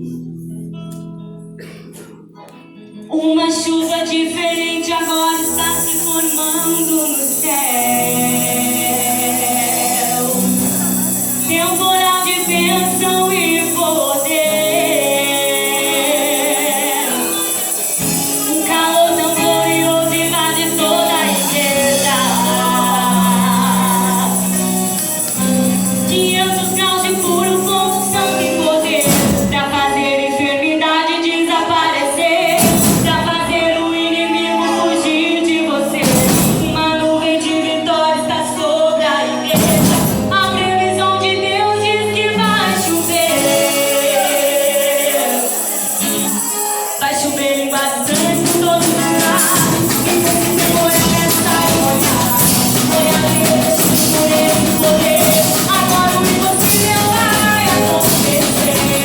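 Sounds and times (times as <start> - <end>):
group singing gospel song: 3.5 - 59.0
percussion band: 4.3 - 30.4, 32.1 - 33.8, 35.9 - 37.5, 39.3 - 41.0, 42.1 - 59.0
tambourines jingling: 4.6 - 29.8, 39.4 - 40.6, 42.4 - 59.0.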